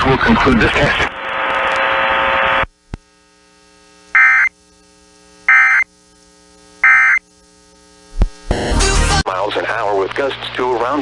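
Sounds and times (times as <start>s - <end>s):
faint hum: 0.0s - 11.0s
buzzy digital data tones: 4.1s - 9.2s.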